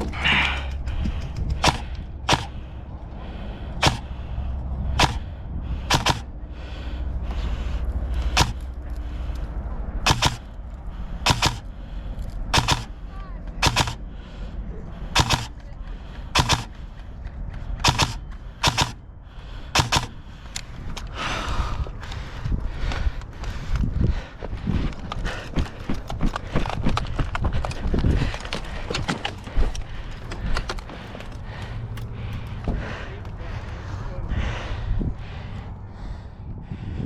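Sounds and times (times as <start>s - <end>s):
low steady rumble: 0.0s - 24.8s
airsoft rifle shots: 1.6s - 2.7s, 3.8s - 4.2s, 5.0s - 5.3s, 5.9s - 6.3s, 8.4s - 8.7s, 10.0s - 10.5s, 11.2s - 11.7s, 12.5s - 13.0s, 13.6s - 14.0s, 15.2s - 15.6s, 16.4s - 16.8s, 17.8s - 19.0s, 19.8s - 20.2s.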